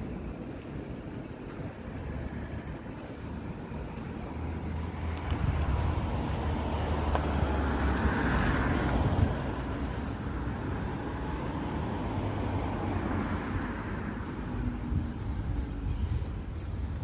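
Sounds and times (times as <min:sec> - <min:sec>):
car passing: 0:00.0 - 0:17.0
low traffic rumble: 0:00.0 - 0:17.0.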